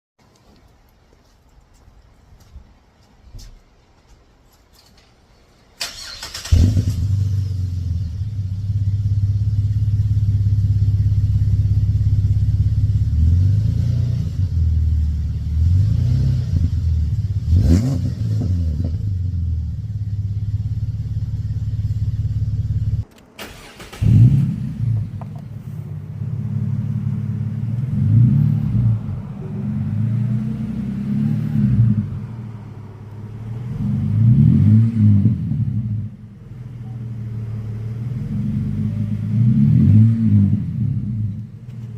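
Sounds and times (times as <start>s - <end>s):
car starter cranking: 5.8s - 7.2s, 23.0s - 24.5s
car engine revving: 5.8s - 41.9s.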